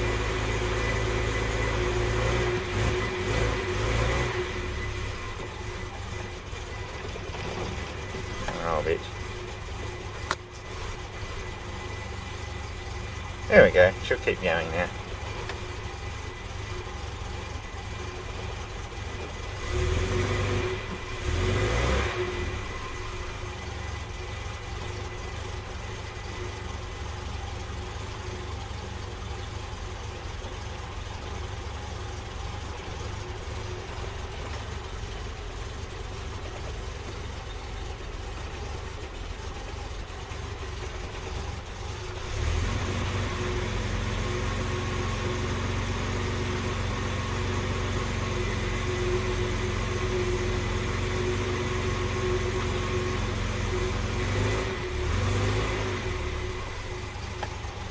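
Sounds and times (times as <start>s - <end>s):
car engine idling: 0.0s - 57.9s
engine throttle blips: 0.0s - 57.9s.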